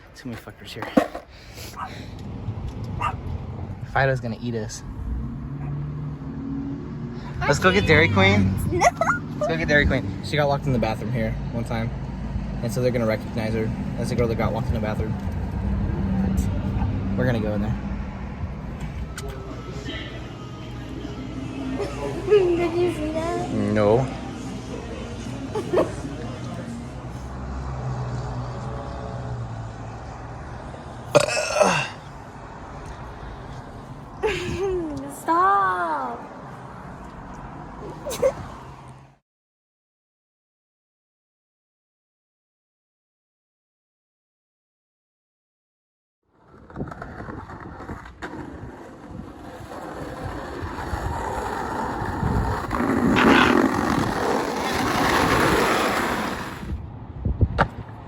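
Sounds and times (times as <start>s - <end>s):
skateboard wheels rolling on pavement: 0.3s - 5.6s, 46.3s - 58.0s
loud burp: 31.1s - 32.1s
wind buffeting microphone: 46.5s - 58.0s.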